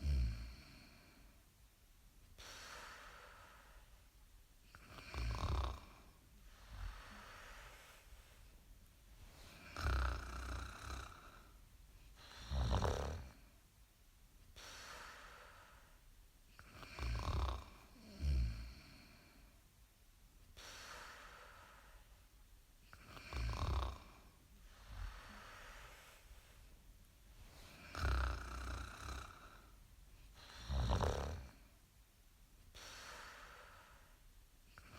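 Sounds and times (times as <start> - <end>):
soft breathing: 2.3 - 13.7, 14.4 - 19.7, 20.5 - 31.9, 32.7 - 34.9
loud rasping snore: 4.9 - 6.0, 9.5 - 11.4, 12.2 - 13.4, 16.7 - 19.0, 23.0 - 24.2, 27.8 - 29.7, 30.4 - 31.6.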